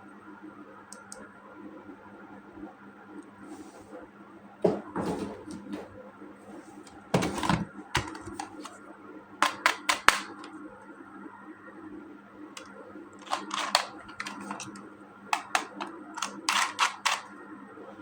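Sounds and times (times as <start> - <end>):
plastic packaging rustling and clatter: 6.6 - 8.8, 13.2 - 14.8
sharp plastic clicks: 9.4 - 10.5, 12.6 - 14.8, 15.4 - 17.3.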